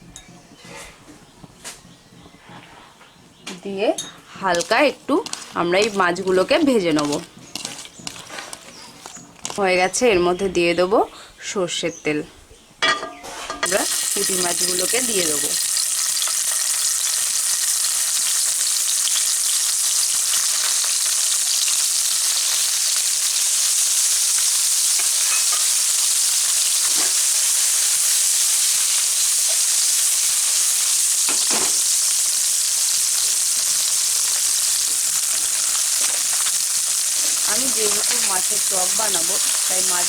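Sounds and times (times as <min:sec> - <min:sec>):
fish frying in hot oil: 0:13.7 - 0:40.0.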